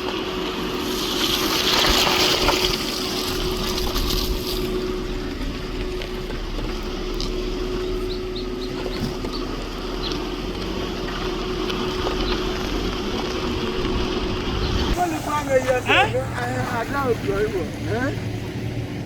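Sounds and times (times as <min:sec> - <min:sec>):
floodwater rushing: 0:00.0 - 0:07.7, 0:12.7 - 0:19.0
steady low hum: 0:00.0 - 0:19.0.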